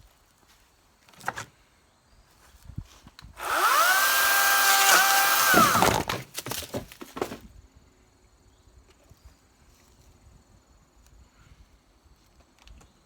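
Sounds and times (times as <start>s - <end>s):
electric chainsaw running: 3.4s - 6.0s.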